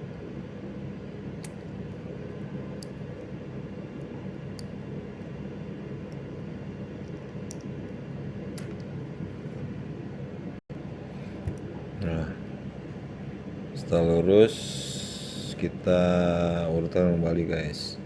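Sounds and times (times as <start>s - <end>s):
low background hum: 0.0s - 18.0s.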